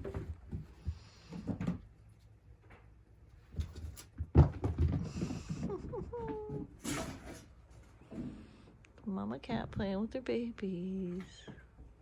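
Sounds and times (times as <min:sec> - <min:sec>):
cats scuffling: 0:00.0 - 0:08.5.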